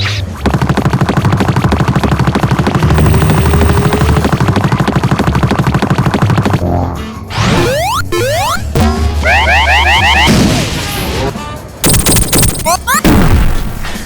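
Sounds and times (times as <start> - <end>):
machine-gun fire: 0.4 - 6.6, 11.8 - 13.8
bass line: 0.5 - 10.4.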